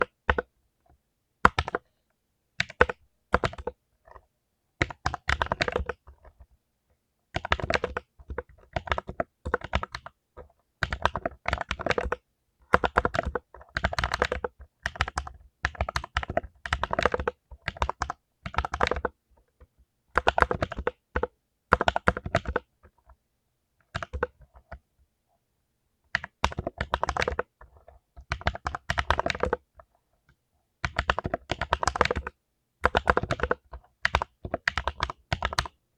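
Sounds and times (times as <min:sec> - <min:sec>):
mechanical keyboard typing: 0:00.0 - 0:00.5, 0:01.4 - 0:01.9, 0:02.6 - 0:04.2, 0:04.8 - 0:06.5, 0:07.3 - 0:10.2, 0:10.8 - 0:19.2, 0:20.1 - 0:23.1, 0:23.9 - 0:24.8, 0:26.1 - 0:29.9, 0:30.8 - 0:35.8.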